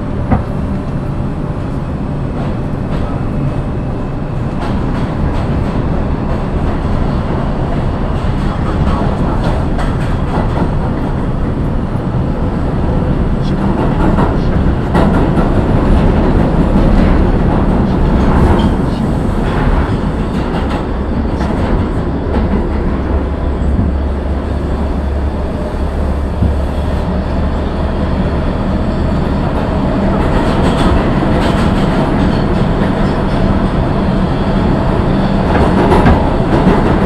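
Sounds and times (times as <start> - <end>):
subway train rumbling: 0.0 - 37.0
wheel clatter on rails: 4.3 - 12.0.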